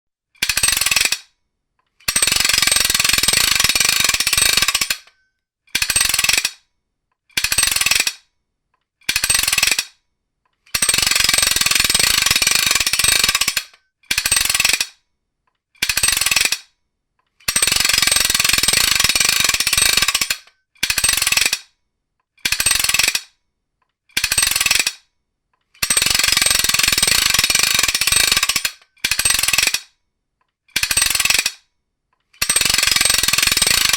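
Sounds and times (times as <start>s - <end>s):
ratchet wrench pawl clicking: 0.4s - 1.3s, 2.0s - 5.1s, 5.8s - 6.6s, 10.7s - 15.0s, 15.8s - 16.7s, 17.4s - 21.7s, 22.4s - 23.3s, 24.1s - 25.0s, 25.8s - 29.9s, 30.7s - 31.6s, 32.4s - 33.9s.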